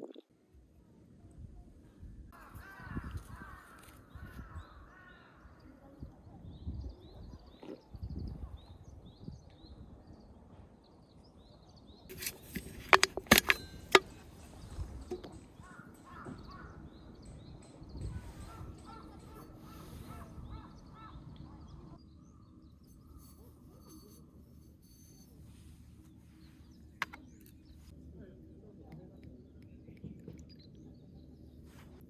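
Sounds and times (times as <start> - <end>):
birds calling: 12.1 - 23.4.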